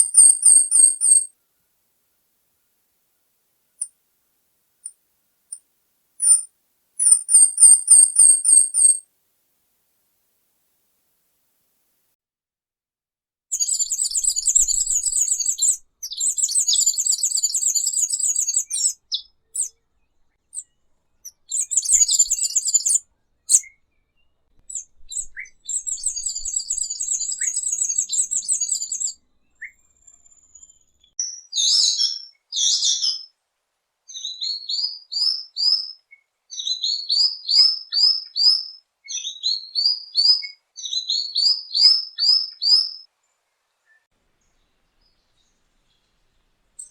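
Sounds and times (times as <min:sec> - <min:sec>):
bird buzzy trills: 0:00.0 - 0:01.2, 0:06.2 - 0:09.0, 0:21.5 - 0:23.0
bird song of short sharp notes: 0:00.0 - 0:01.3, 0:06.2 - 0:09.0, 0:13.5 - 0:33.3, 0:34.1 - 0:46.9.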